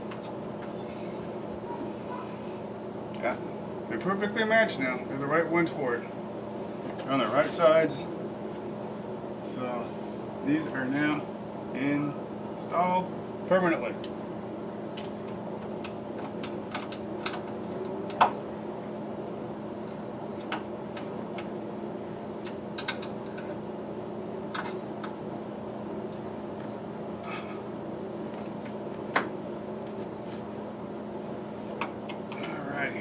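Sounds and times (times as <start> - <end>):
steady hum: 0.0 - 33.0.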